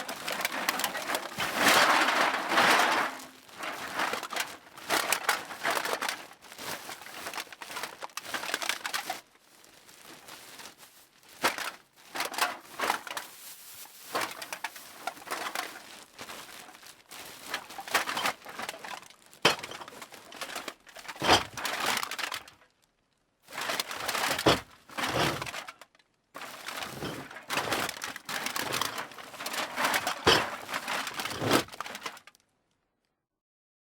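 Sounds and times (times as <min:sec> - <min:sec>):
empty cans clattering together: 0:00.0 - 0:06.2, 0:17.8 - 0:22.4, 0:23.6 - 0:25.7, 0:26.4 - 0:32.1.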